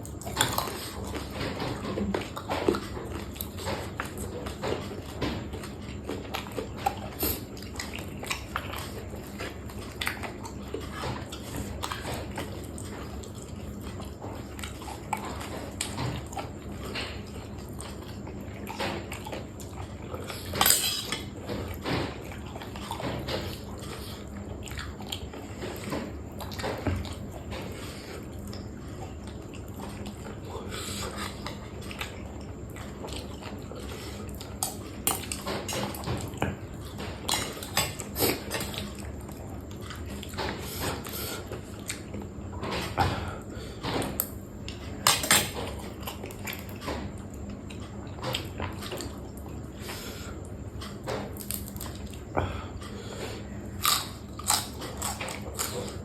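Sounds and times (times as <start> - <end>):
chewing and biting food: 0.0 - 56.0
cutlery clicking on dishes: 20.6 - 21.2.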